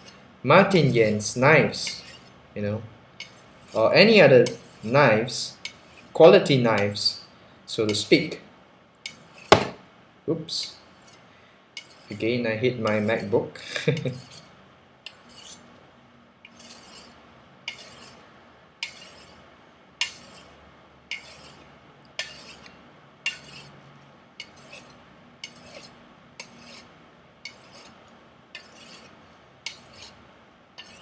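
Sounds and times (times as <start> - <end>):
knife rubbing on strop: 0.8 - 2.4, 3.2 - 6.1, 11.8 - 12.2, 12.9 - 14.5, 15.1 - 15.7, 16.4 - 18.2, 18.8 - 19.4, 20.0 - 23.8, 24.4 - 30.2, 30.8 - 31.0.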